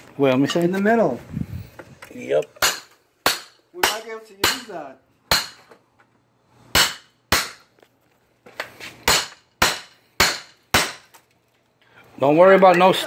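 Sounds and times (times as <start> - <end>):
hammer striking window frame: 5.3 - 5.6, 6.7 - 7.6, 9.1 - 11.1.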